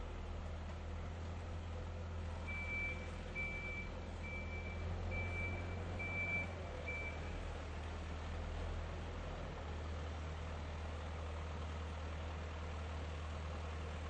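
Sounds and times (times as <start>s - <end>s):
reversing alarm beeping: 2.5s - 7.3s.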